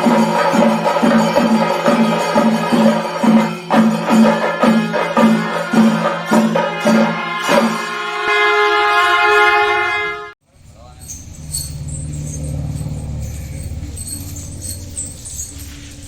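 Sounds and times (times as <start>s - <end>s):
percussion music with low drone: 0.0s - 8.2s, 10.5s - 16.0s
sharp metallic strokes: 10.5s - 16.0s.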